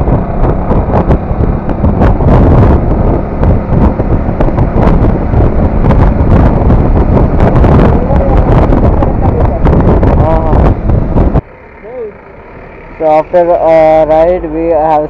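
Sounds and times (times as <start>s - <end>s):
wind buffeting microphone: 0.0s - 11.5s
motorcycle engine running: 0.0s - 15.0s.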